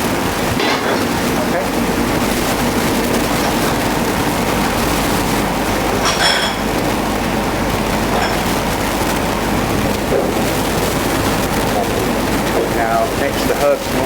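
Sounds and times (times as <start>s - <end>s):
kitchen hiss and hum: 0.0s - 14.0s
utensil clinking: 0.4s - 8.8s.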